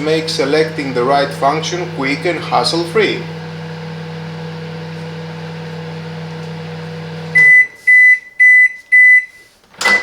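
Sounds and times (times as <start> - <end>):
microwave oven humming: 0.0 - 7.9.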